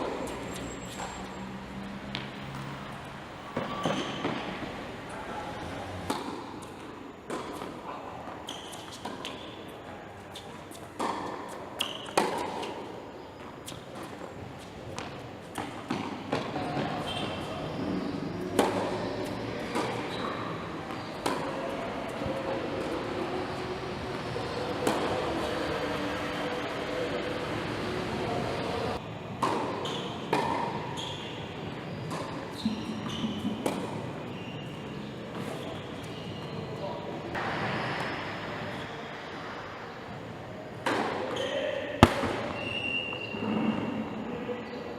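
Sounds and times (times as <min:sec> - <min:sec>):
steady background hiss: 0:00.0 - 0:32.6
short high squeaks: 0:03.6 - 0:04.4, 0:08.4 - 0:09.6, 0:19.2 - 0:21.1, 0:30.9 - 0:31.4, 0:41.4 - 0:44.1
echoing sharp thuds: 0:42.0 - 0:42.7.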